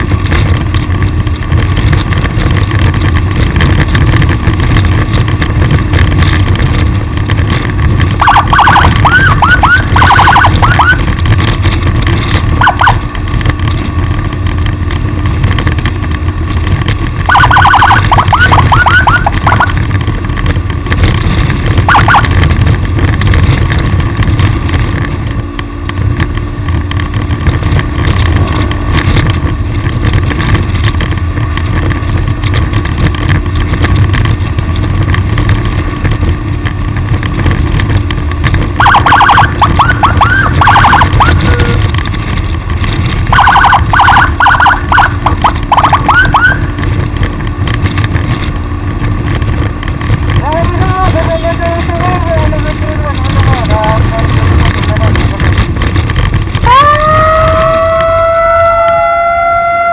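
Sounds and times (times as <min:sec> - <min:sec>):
wind and road rumble: 0:00.0 - 0:59.9
rising electronic chirp siren: 0:08.2 - 0:11.1, 0:12.6 - 0:13.0, 0:17.3 - 0:19.8, 0:21.9 - 0:22.3, 0:38.8 - 0:41.8, 0:43.3 - 0:46.7, 0:56.6 - 0:59.9.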